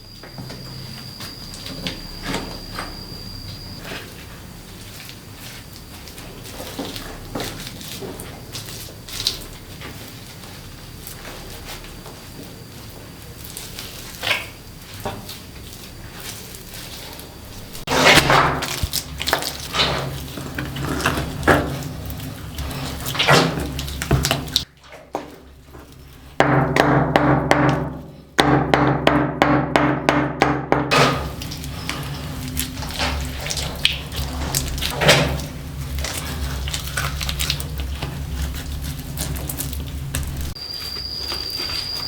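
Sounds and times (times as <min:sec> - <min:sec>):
knocks and thuds of hand work: 0:26.4 - 0:31.3.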